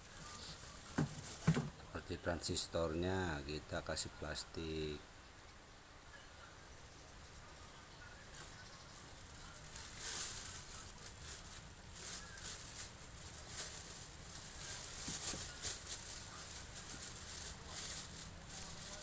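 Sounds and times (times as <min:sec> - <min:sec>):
thin plastic crinkling: 0:00.0 - 0:01.8, 0:08.3 - 0:19.0.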